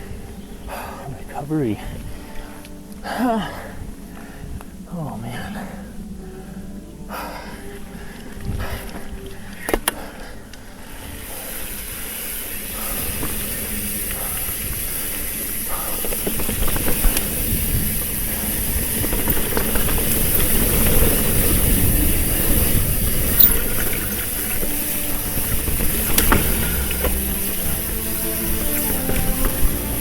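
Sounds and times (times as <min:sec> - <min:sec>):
wind and tyre noise: 0:00.0 - 0:30.0
bike rattles and clicks: 0:08.1 - 0:30.0.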